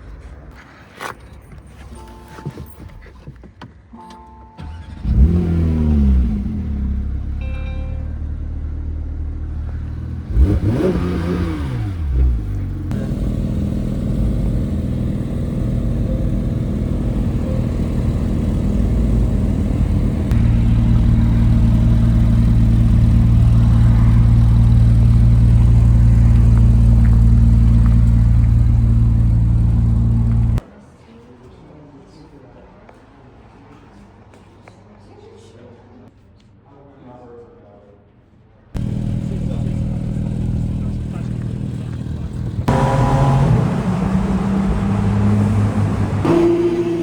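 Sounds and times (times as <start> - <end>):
sports car engine: 4.6 - 30.6, 38.8 - 47.0.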